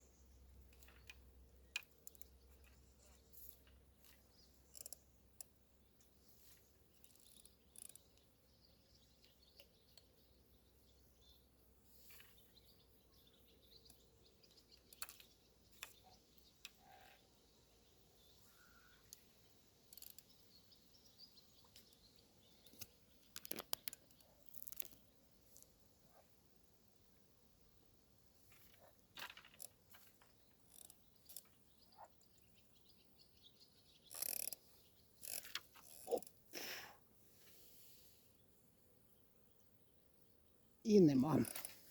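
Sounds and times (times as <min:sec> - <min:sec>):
faint bird chirps: 0:00.0 - 0:26.3, 0:29.6 - 0:36.3
small clicks and taps: 0:22.6 - 0:25.8.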